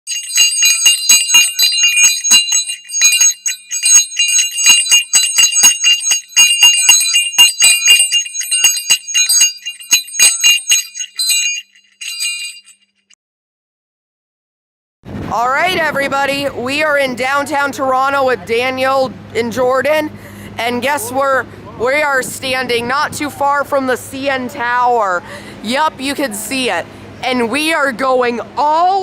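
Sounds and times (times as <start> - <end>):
bells rung rapidly: 0.0 - 13.0.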